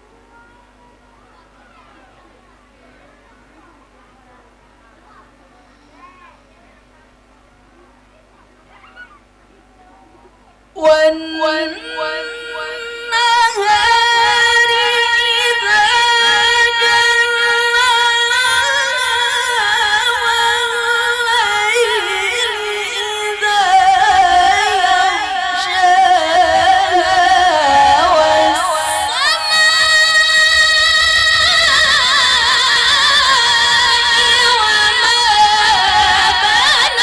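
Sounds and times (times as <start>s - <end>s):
woman reciting melodically: 10.6s - 37.0s.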